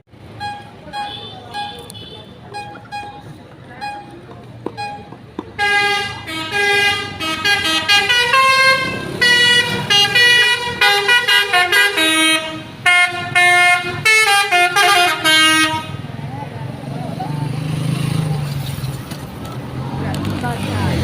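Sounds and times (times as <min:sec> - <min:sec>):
multi-tone bus horn tune: 0:00.3 - 0:04.2, 0:04.8 - 0:16.1.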